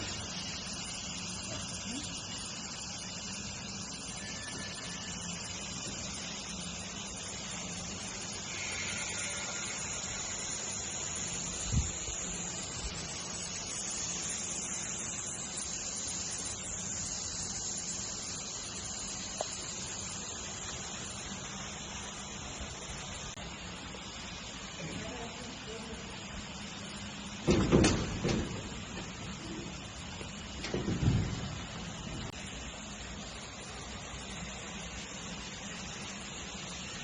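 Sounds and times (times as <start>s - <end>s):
steady machine hiss: 0.0s - 37.0s
thump: 27.4s - 29.2s, 30.6s - 31.7s.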